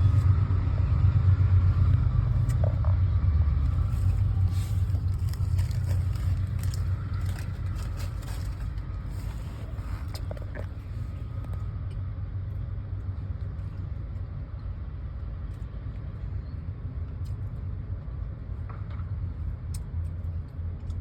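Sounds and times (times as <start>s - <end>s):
freight train rumbling past: 0.0s - 10.9s.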